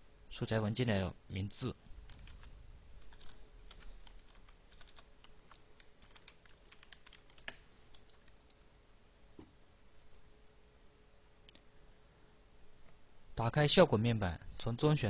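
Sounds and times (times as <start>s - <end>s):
keyboard typing: 2.0s - 8.6s.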